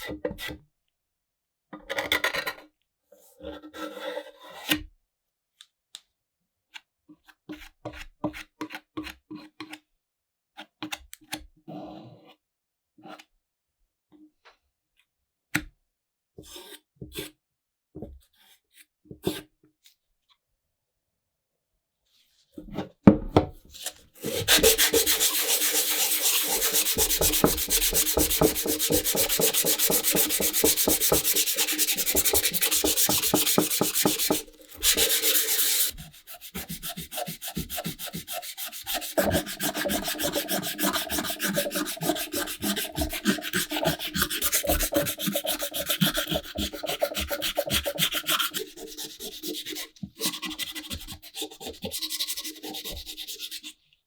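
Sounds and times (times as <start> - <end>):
sandpaper rubbing: 23.8 - 53.7.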